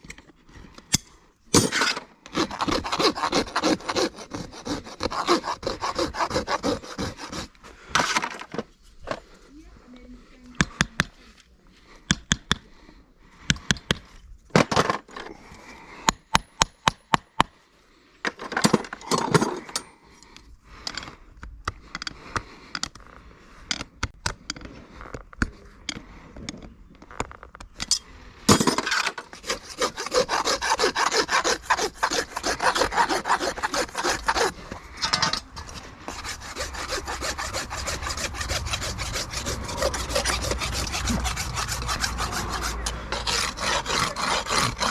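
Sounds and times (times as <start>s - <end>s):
rasp scraping hoof: 1.6s - 9.2s, 28.5s - 44.9s.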